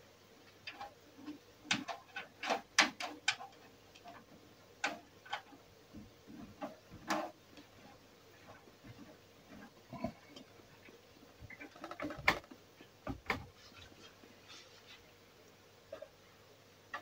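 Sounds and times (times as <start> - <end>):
computer parts clicking and knocking: 0.6 - 5.6, 11.5 - 12.5.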